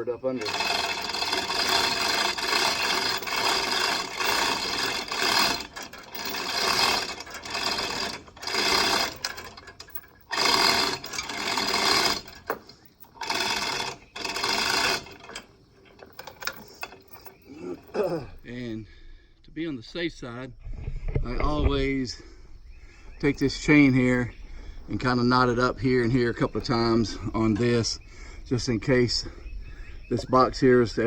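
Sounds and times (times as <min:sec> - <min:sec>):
hoist chain rattling and whirring: 0:00.2 - 0:17.9.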